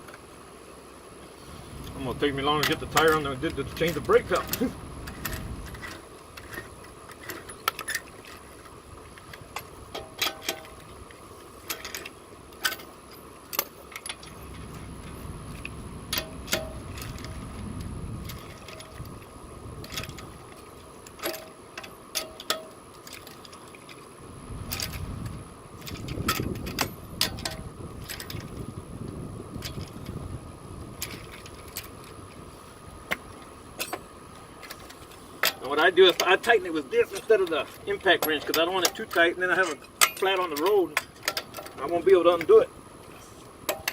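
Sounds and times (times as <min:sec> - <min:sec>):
metallic clinks of lug nuts: 0:21.2 - 0:22.8, 0:38.0 - 0:42.5, 0:43.7 - 0:43.9.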